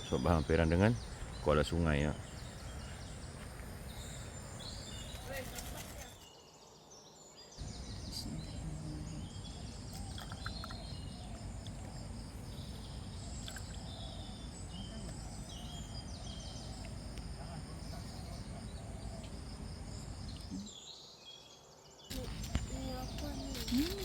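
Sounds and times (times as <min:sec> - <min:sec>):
birds chirping: 0:00.0 - 0:24.0
low outdoor rumble: 0:07.6 - 0:20.6
high-pitched insect buzz: 0:22.1 - 0:24.0.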